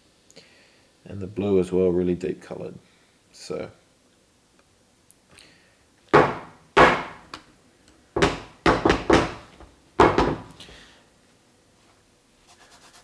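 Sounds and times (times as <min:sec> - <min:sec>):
shoe heel thudding on hard surface: 0:06.2 - 0:07.3, 0:08.2 - 0:10.7.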